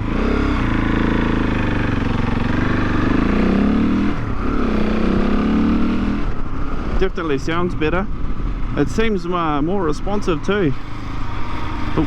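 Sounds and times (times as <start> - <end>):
motorcycle engine under throttle: 0.0 - 12.0.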